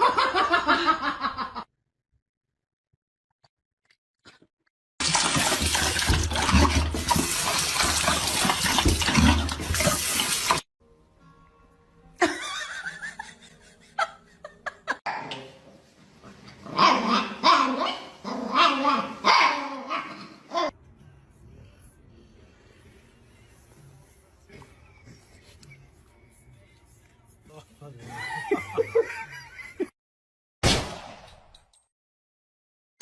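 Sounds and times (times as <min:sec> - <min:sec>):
dog barking: 0:16.7 - 0:20.7.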